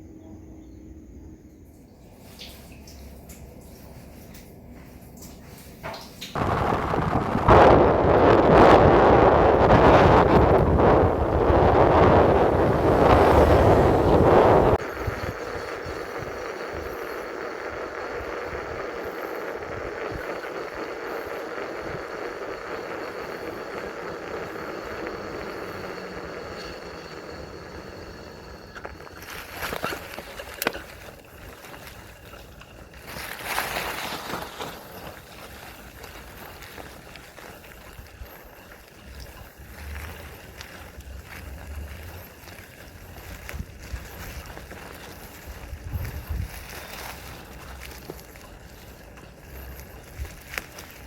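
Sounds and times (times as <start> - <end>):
bike tyres rolling on dirt trail: 2.2 - 51.0.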